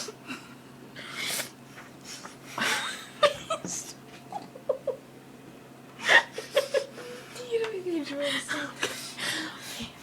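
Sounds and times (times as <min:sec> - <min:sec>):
person giggling: 0:02.5 - 0:05.1, 0:06.0 - 0:07.2.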